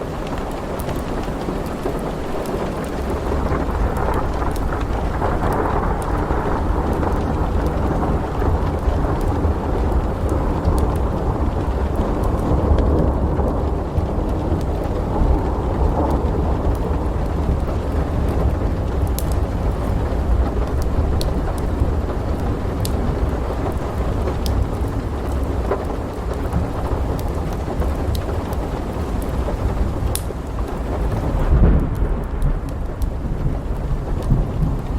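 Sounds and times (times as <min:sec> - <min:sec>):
low rumble of thunder: 0:00.0 - 0:34.9
steady rain: 0:00.0 - 0:34.9.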